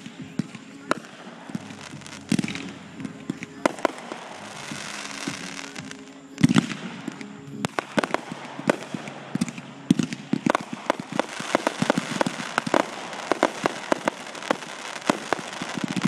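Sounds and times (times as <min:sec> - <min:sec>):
fireworks popping and crackling: 0:00.0 - 0:16.0.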